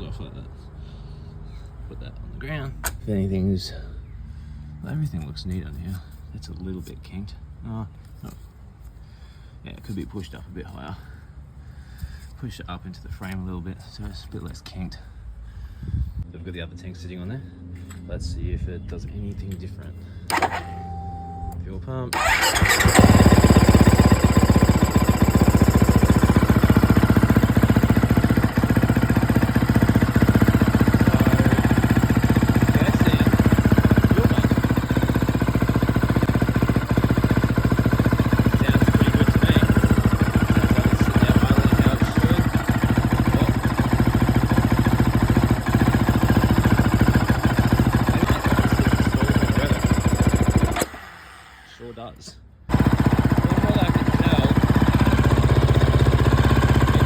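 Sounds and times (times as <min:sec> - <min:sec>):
dirt bike engine idling: 0:22.2 - 0:57.0.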